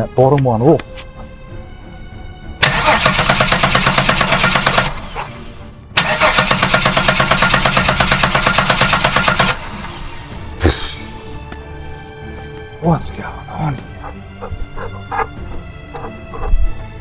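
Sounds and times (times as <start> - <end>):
engine cranking on starter: 2.6 - 10.5.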